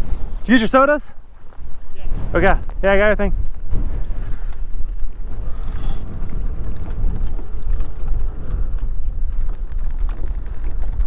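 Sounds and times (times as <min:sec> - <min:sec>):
boat engine rumble: 0:00.0 - 0:11.0.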